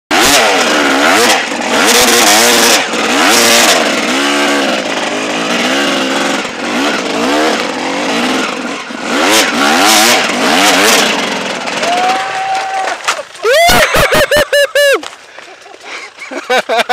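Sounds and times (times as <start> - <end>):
dirt bike engine revving: 0.1 - 12.3.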